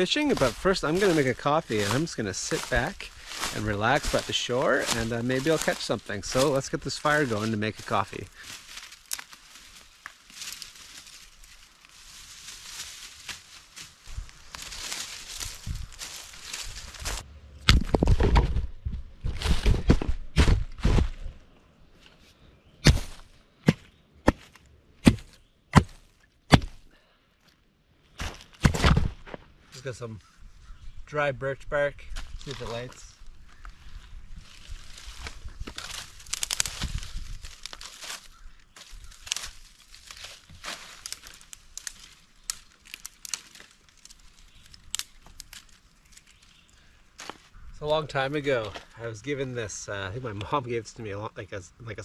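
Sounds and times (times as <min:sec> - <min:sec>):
dry wood cracking: 0:00.0 - 0:18.6, 0:34.5 - 0:47.6.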